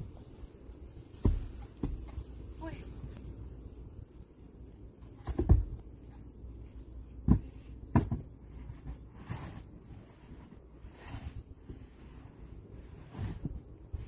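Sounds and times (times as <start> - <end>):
dull thumps: 1.0 - 2.3, 5.0 - 6.2, 7.1 - 9.6.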